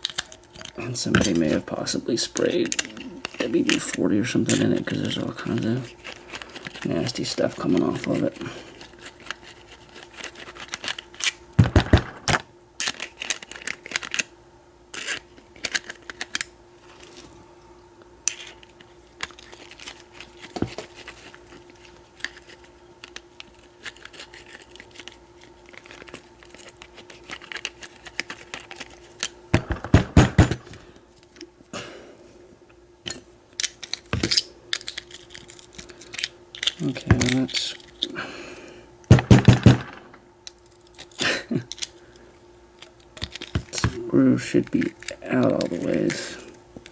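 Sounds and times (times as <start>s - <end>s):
handling noise: 11.6s - 12.5s, 29.5s - 31.0s, 39.1s - 40.3s.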